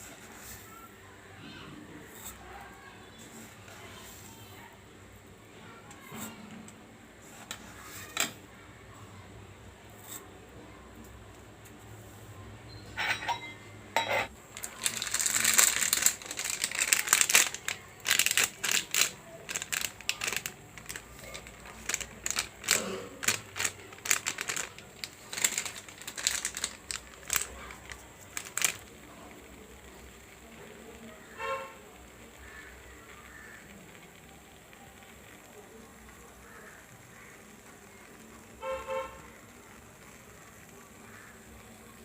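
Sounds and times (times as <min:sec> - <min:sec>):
kitchen utensils clicking and tapping: 0:13.0 - 0:14.3
crinkling: 0:14.2 - 0:42.0.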